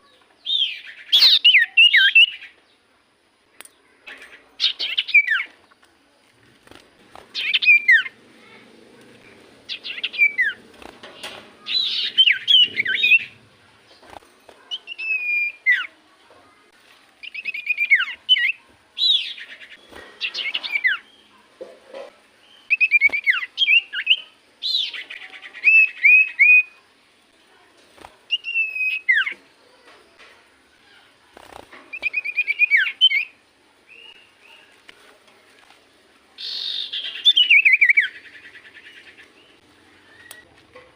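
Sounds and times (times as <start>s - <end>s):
bird chirping and whistling: 0.5s - 2.4s, 7.4s - 8.1s, 9.7s - 10.6s, 11.7s - 13.3s, 14.7s - 15.9s, 22.6s - 25.0s, 28.3s - 29.4s, 32.0s - 33.3s, 36.4s - 38.1s.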